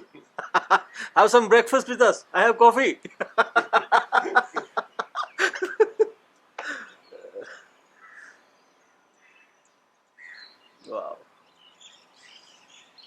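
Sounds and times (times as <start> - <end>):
man laughing: 0.0 - 1.2, 3.0 - 7.6.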